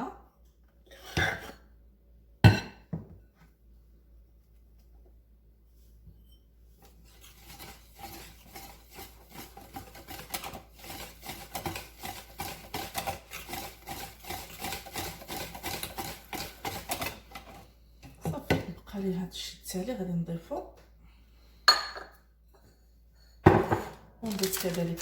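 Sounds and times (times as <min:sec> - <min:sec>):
utensil rasping against bowl: 0:06.8 - 0:17.6.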